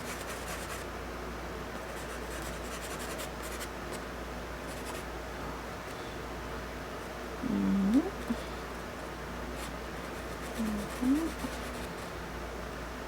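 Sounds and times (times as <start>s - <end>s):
charcoal scratching on paper: 0.0s - 0.9s, 1.8s - 3.7s, 9.6s - 12.0s
low steady hum: 0.0s - 13.0s.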